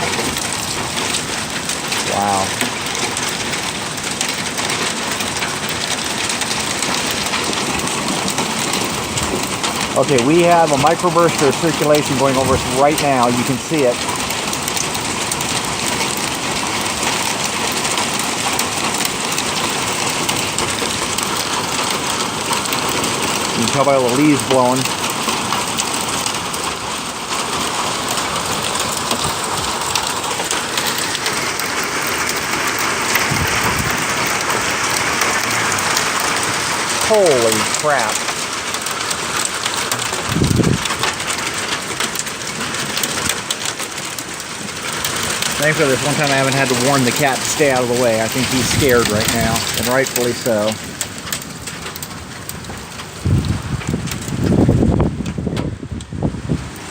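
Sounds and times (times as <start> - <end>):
heavy rain and hail on house: 0.0 - 56.9
low thunder rumble: 33.1 - 38.6, 40.0 - 41.3, 52.6 - 56.8.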